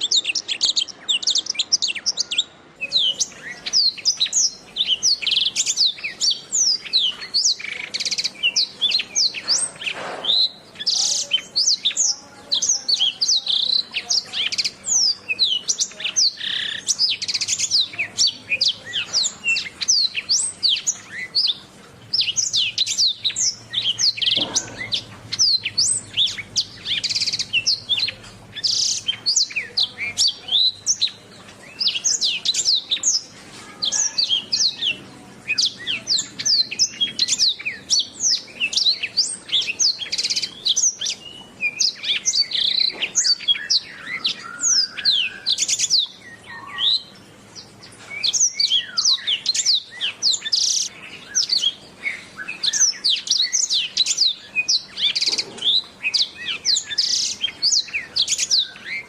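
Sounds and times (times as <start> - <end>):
canary singing chirps and trills: 0.0 - 59.0.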